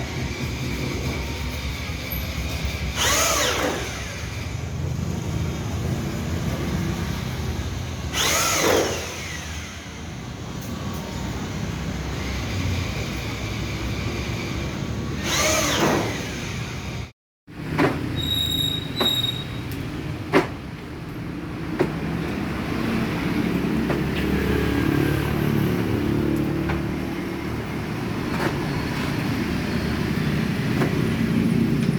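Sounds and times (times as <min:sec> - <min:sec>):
workshop hum: 0:00.0 - 0:31.9
mechanical whirs sweeping down: 0:03.0 - 0:04.5, 0:08.1 - 0:09.8, 0:15.2 - 0:16.6.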